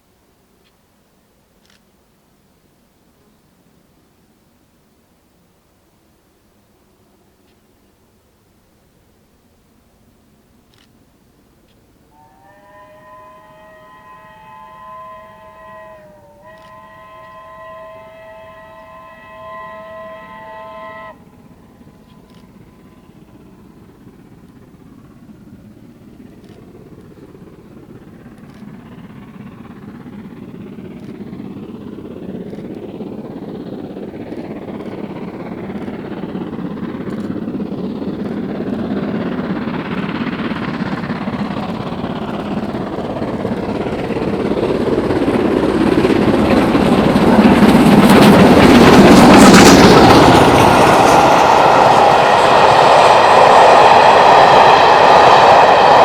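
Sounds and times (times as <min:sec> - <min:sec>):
train approaching rumble: 0:09.5 - 0:56.0
steam locomotive whistle: 0:12.0 - 0:23.4.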